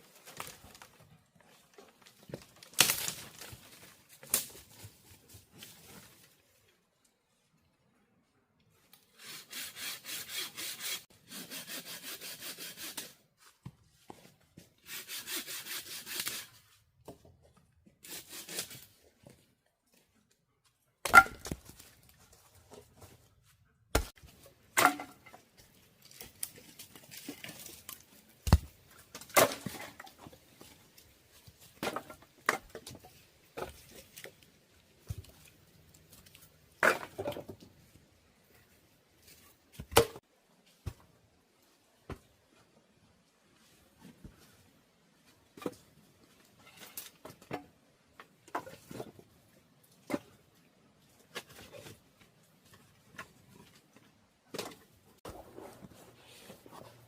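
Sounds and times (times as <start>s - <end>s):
hand saw cutting wood: 9.1s - 13.2s, 14.8s - 16.6s, 18.0s - 18.9s.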